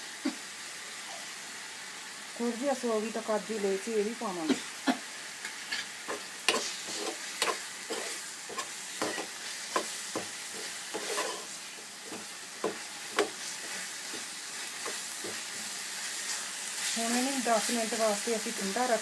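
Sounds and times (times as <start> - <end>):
food sizzling in hot oil: 0.0 - 19.0
spoon scraping a pan: 5.4 - 17.2.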